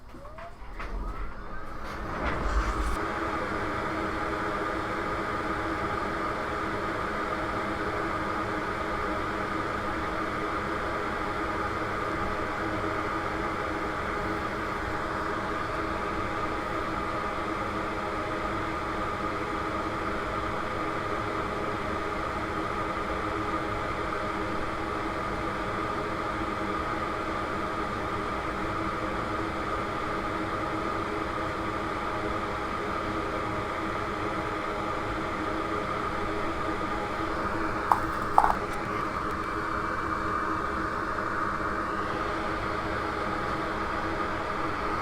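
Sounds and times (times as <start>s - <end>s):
small electric fan whirring: 36.3s - 41.4s.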